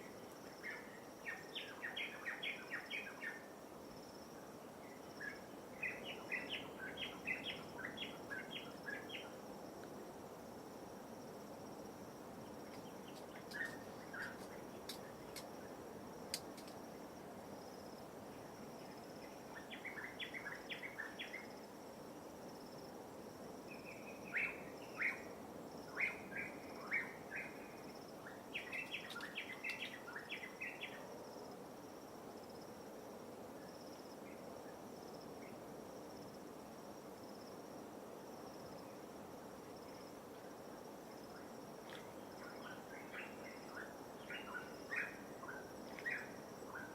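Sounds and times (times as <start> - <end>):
insect trill: 0.0 - 46.9
sharp clicks: 16.3 - 16.8.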